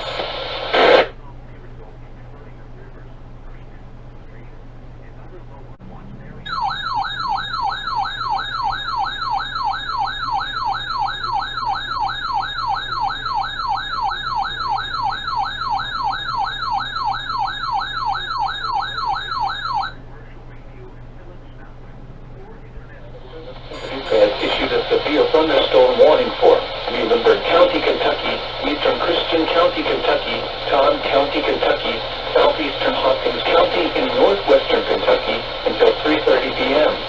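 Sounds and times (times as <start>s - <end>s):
radio hiss: 0.0s - 6.6s, 22.5s - 37.0s
steady low hum: 0.0s - 37.0s
electronic yelp siren tone: 5.8s - 20.0s, 23.4s - 37.0s.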